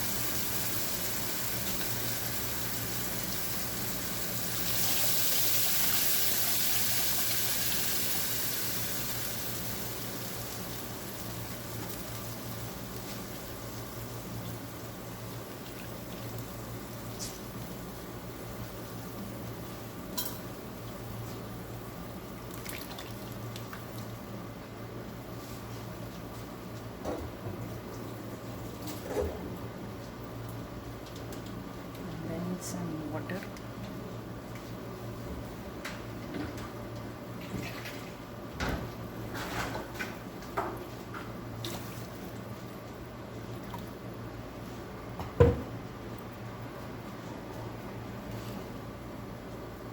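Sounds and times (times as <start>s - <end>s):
water pouring into a pan: 0.0s - 12.1s.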